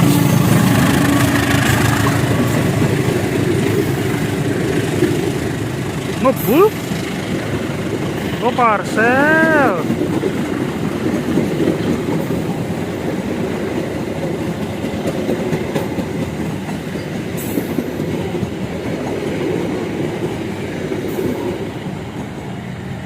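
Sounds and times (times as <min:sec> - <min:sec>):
train wheels rumbling on rails: 0:00.0 - 0:23.0.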